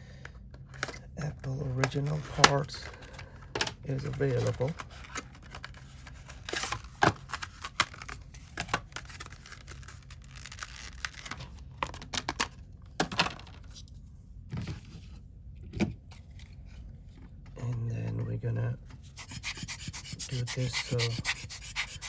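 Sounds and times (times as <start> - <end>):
packaging crinkling and tearing: 4.0 - 12.6.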